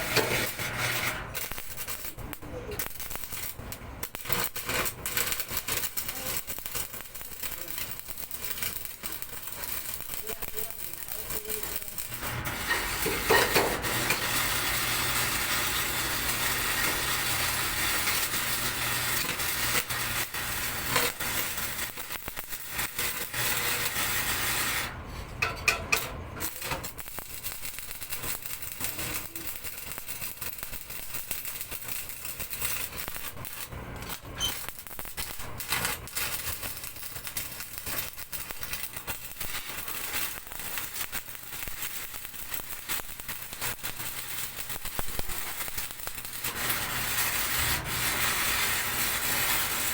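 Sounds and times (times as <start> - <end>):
arc welding crackling hiss: 0.0 - 25.0, 25.9 - 49.9
quiet irregular crackle: 0.2 - 13.0, 26.4 - 49.8.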